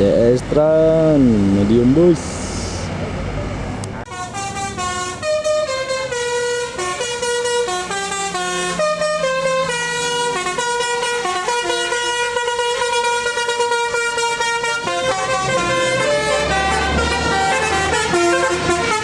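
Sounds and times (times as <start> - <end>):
musical air horn melody: 4.1 - 19.0.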